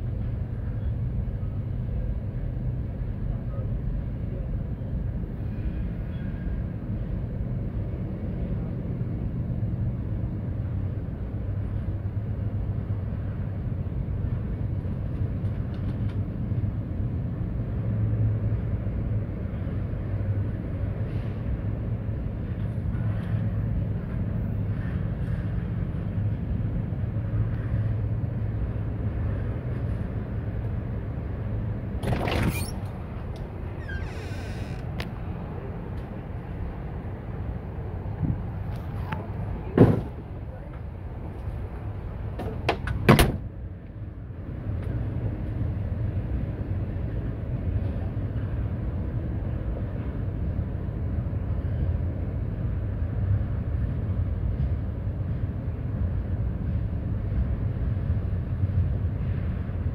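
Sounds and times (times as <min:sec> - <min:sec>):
freight train rumbling past: 0:00.0 - 0:59.9.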